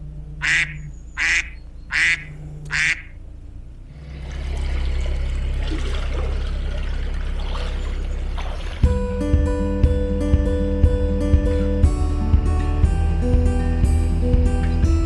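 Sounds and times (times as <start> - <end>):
low hum: 0.0 - 15.0
duck quacking: 0.4 - 3.2.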